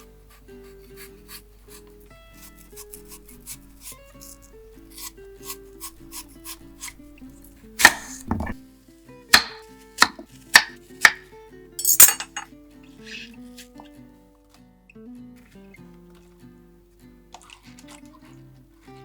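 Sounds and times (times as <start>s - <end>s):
soft background music: 0.0s - 19.0s
knife chopping on cutting board: 2.4s - 7.0s, 7.8s - 8.6s, 9.4s - 11.3s.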